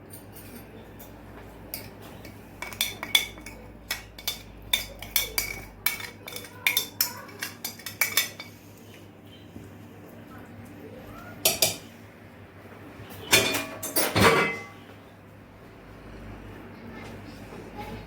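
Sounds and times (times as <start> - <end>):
metal utensils clattering on cookware: 0.0 - 9.0, 11.4 - 11.9, 13.2 - 14.8.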